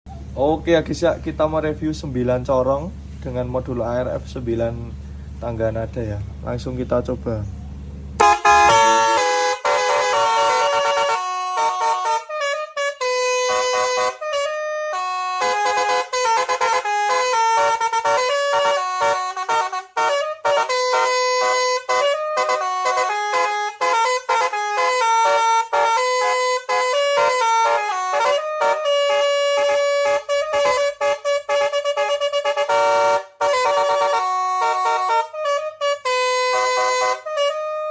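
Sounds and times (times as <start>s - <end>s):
musical car horn playing a melody: 8.2s - 37.9s.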